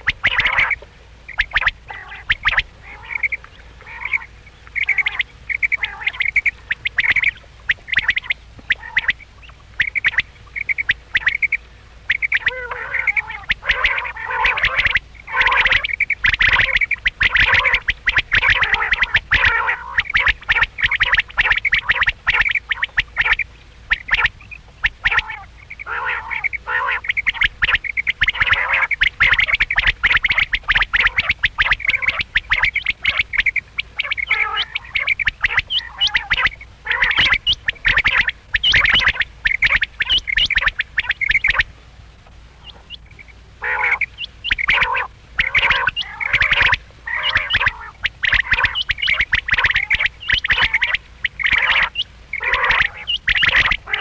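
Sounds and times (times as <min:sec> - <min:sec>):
quail calling: 0:00.0 - 0:54.0.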